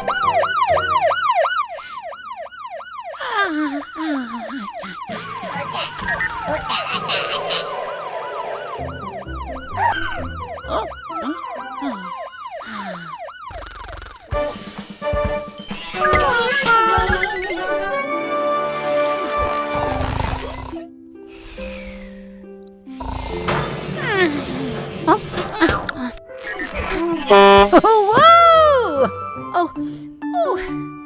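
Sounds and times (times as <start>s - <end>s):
music: 0.0s - 1.7s, 5.7s - 12.0s, 14.3s - 31.0s
rapid yelping siren: 0.0s - 20.8s, 25.0s - 28.8s
cartoon sound effects: 3.2s - 14.6s, 15.6s - 17.9s, 23.2s - 29.1s.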